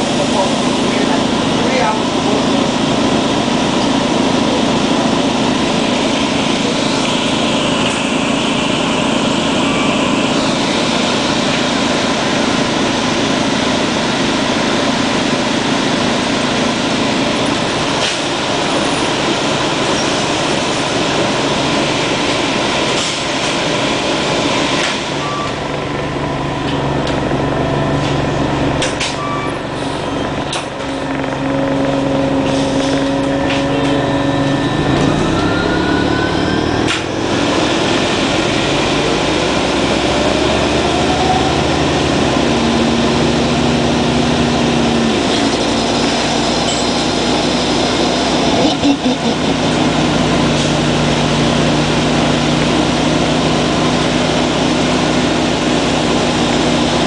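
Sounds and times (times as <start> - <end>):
bus engine running: 0.0 - 57.0.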